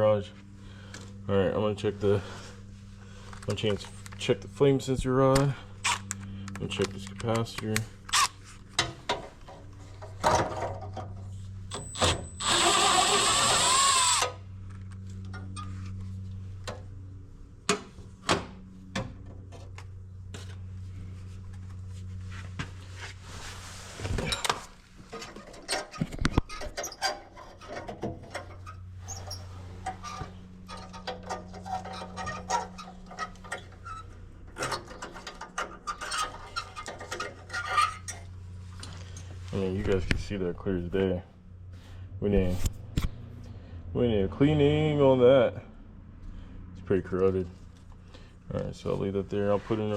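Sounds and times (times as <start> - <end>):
steady low hum: 0.0 - 49.9
cordless drill running: 11.9 - 14.4.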